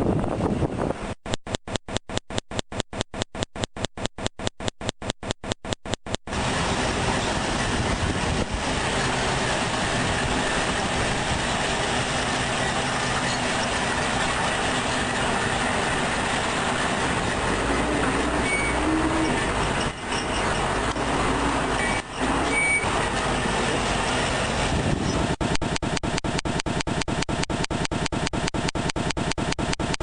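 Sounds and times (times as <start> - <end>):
loud mechanical din: 6.3 - 25.0.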